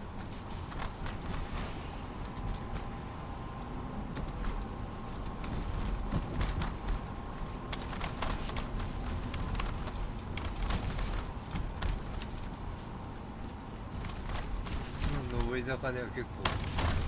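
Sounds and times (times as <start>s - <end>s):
low road rumble in car cabin: 0.0s - 17.0s
rattling clicks and ticks: 16.4s - 17.0s.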